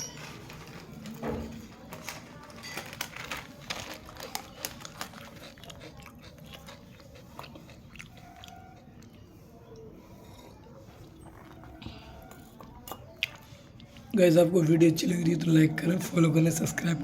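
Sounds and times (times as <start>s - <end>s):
person chewing crunchy snacks: 2.9s - 9.2s.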